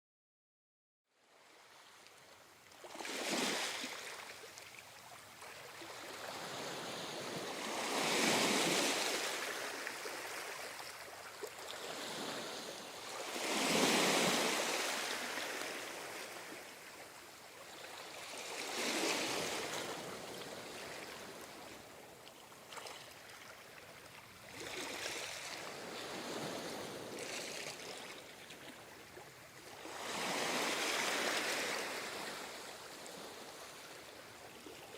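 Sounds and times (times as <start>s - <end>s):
ocean waves breaking: 5.9s - 16.8s, 17.8s - 21.9s, 29.8s - 34.0s.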